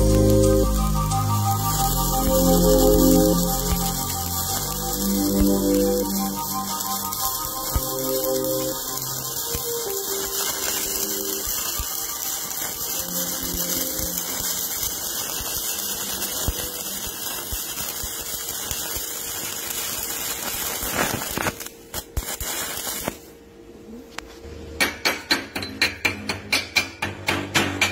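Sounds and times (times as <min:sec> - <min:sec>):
faint background music: 0:00.0 - 0:19.5
welding arc crackling: 0:00.0 - 0:23.4.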